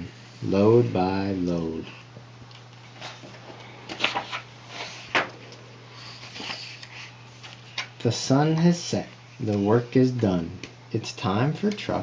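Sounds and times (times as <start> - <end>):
low steady hum: 0.0 - 12.0
paper pages rustling: 2.9 - 5.4, 6.0 - 8.0.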